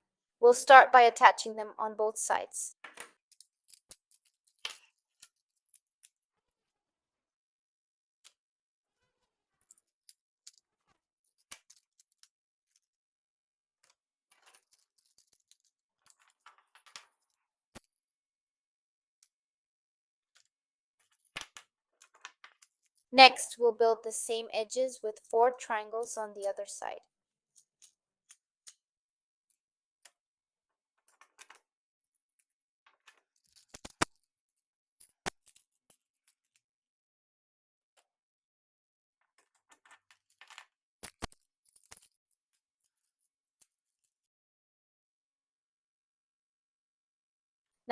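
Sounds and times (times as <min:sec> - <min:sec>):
plastic tiles snapping together: 0:33.6 - 0:34.1, 0:41.0 - 0:41.4.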